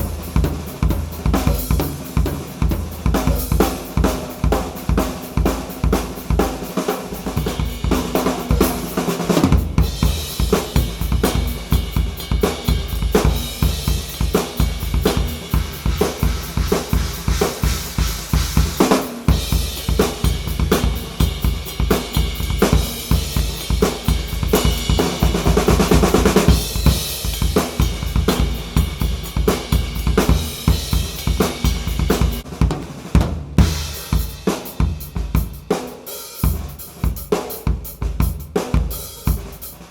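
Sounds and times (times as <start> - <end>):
bass drum: 0.0 - 6.4, 7.2 - 35.7
cymbals: 0.0 - 32.4, 33.6 - 39.9
drum kit playing a groove: 0.0 - 39.9
snare drum: 0.0 - 39.9
hi-hats: 15.6 - 19.2.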